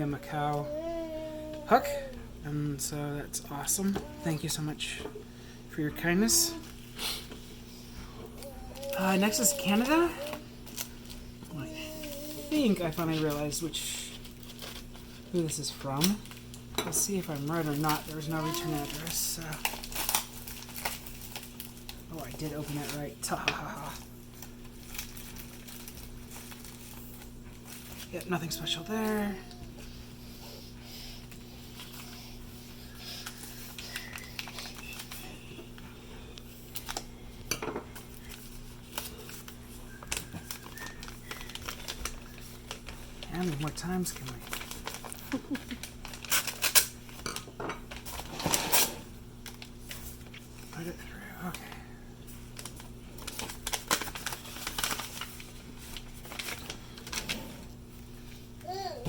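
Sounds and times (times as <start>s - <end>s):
hands handling parcel contents: 7.8s - 15.4s, 17.4s - 23.0s, 23.7s - 30.3s, 31.2s - 47.2s, 51.4s - 57.2s
packaging crinkling: 8.4s - 15.4s, 16.0s - 16.7s, 17.3s - 23.0s, 23.7s - 30.0s, 31.3s - 37.2s, 38.0s - 47.2s, 47.9s - 51.5s, 52.3s - 58.7s.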